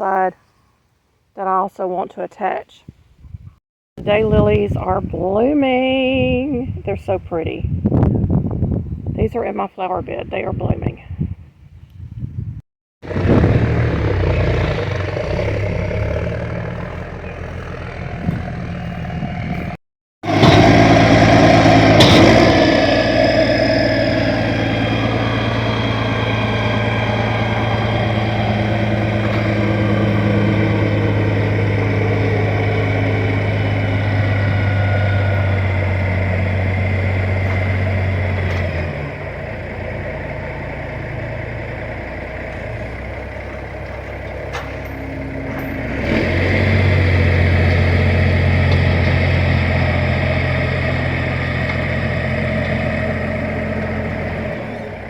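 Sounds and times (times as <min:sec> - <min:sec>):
engine humming: 0:13.0 - 0:55.0.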